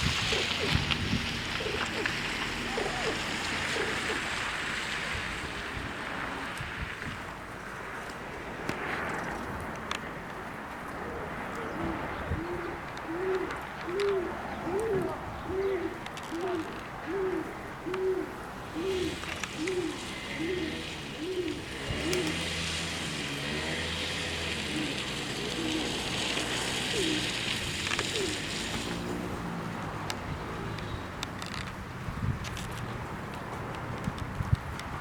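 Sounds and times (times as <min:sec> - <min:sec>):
bird hooting: 0:01.6 - 0:04.3, 0:11.7 - 0:22.4, 0:26.8 - 0:27.4, 0:28.0 - 0:28.5.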